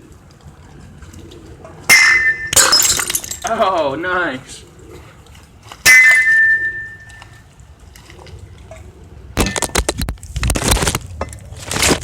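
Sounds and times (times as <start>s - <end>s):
glass clink ringing: 5.9s - 7.2s.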